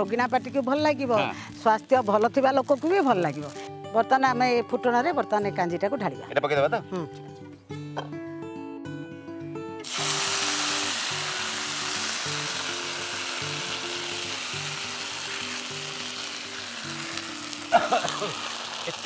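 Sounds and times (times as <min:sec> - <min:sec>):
sauce sizzling in hot oil: 0:00.0 - 0:03.7, 0:09.8 - 0:19.0
background music: 0:00.0 - 0:19.0.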